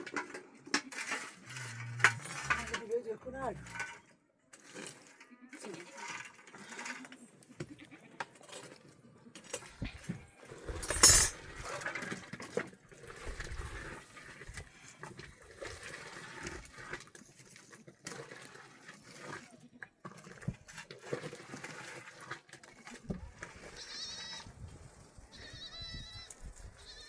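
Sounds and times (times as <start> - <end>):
light clinks and knocks: 10.7 - 11.4.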